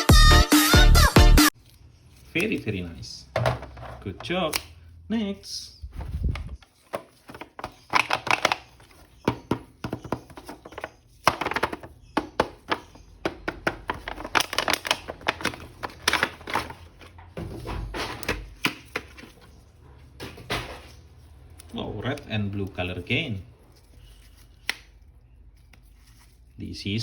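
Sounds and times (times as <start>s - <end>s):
packaging clicking and crinkling: 6.6s - 17.3s.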